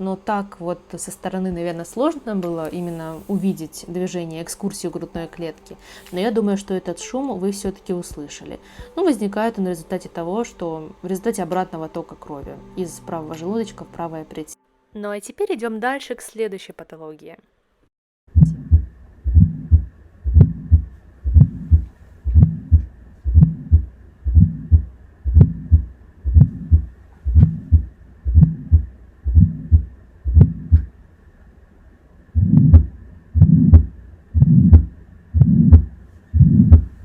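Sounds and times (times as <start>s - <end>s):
heartbeat with rough murmur: 18.3s - 30.9s, 32.4s - 37.0s.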